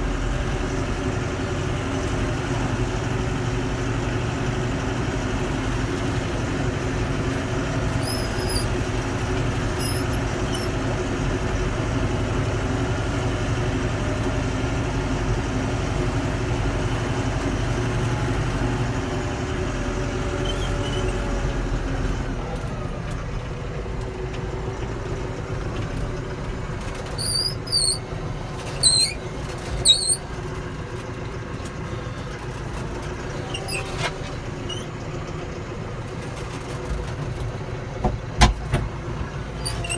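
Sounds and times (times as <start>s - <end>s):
vehicle engine running: 0.0s - 39.9s
short high squeaks: 7.9s - 8.8s, 9.8s - 10.8s, 20.4s - 21.3s, 27.1s - 30.3s, 33.4s - 34.9s, 39.6s - 39.9s.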